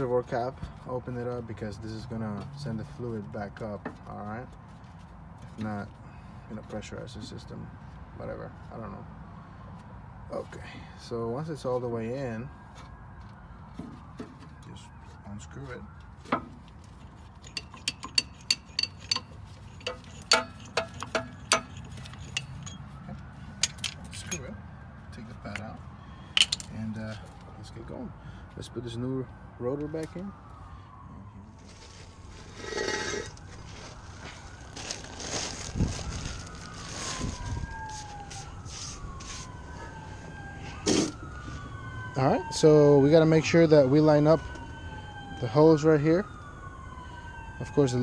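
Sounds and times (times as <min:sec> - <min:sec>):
distant emergency siren wailing: 0:00.0 - 0:48.0
sharp metallic clinks: 0:17.4 - 0:23.0.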